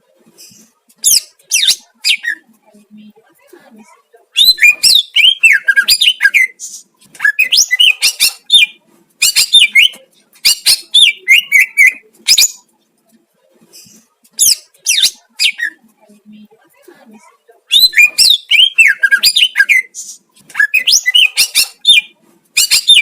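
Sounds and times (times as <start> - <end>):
bird singing chirps and whistles: 4.4 - 6.6, 7.2 - 12.6, 17.7 - 20.0, 20.6 - 23.0.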